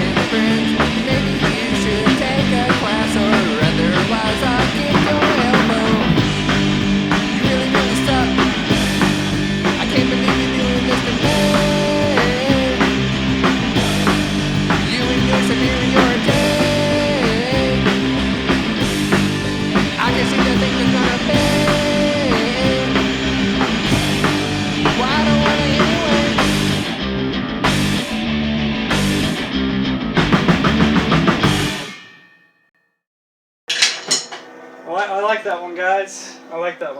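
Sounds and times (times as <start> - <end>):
bass guitar: 0.0 - 31.9
electric guitar: 0.0 - 31.9
drums: 0.0 - 32.4, 33.7 - 36.5.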